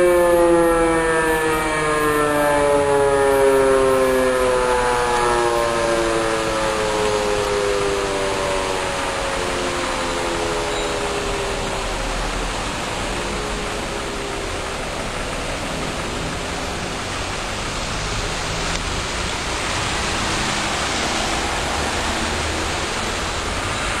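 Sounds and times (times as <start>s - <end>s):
siren winding down: 0.0s - 17.0s, 19.3s - 24.0s
steady rushing noise: 6.6s - 24.0s.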